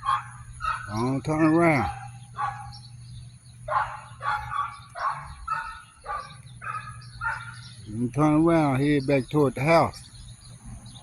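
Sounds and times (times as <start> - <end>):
dog barking: 0.0 - 2.8, 3.7 - 7.6.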